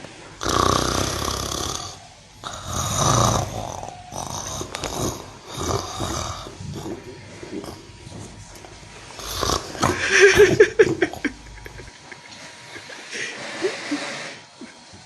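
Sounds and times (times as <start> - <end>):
cow snoring: 0.4 - 8.3, 9.2 - 10.4.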